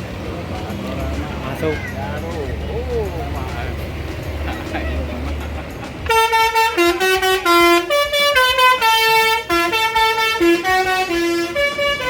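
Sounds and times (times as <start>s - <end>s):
bus horn playing tune: 3.5s - 12.0s.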